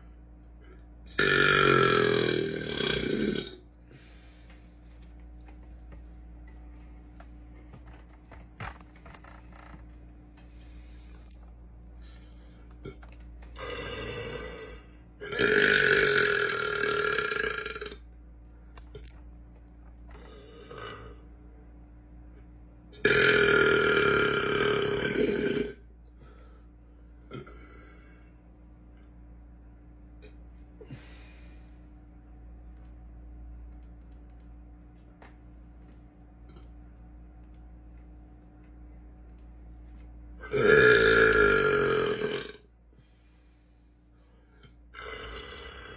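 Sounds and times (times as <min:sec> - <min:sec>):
steady low hum: 0:00.0 - 0:45.9
man burping: 0:00.6 - 0:03.6, 0:12.8 - 0:18.0, 0:23.0 - 0:25.8, 0:27.2 - 0:27.8, 0:40.4 - 0:42.6, 0:44.9 - 0:45.9
faint scattered clicks: 0:33.6 - 0:40.1.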